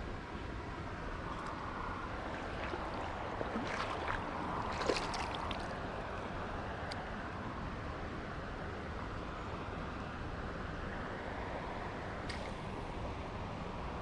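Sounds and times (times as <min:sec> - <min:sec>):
creek water flowing: 0:01.0 - 0:06.9.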